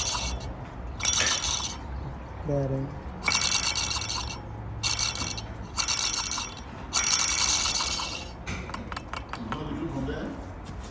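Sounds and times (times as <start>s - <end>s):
pump pulley whirring roughly: 0.0s - 2.0s, 3.2s - 9.3s.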